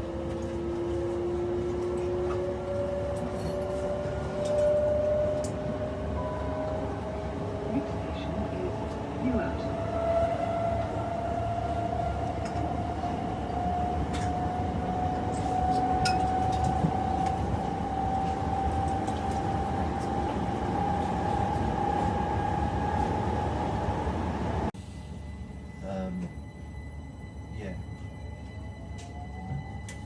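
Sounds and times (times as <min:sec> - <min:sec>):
electric train motor whine: 0:00.0 - 0:25.8.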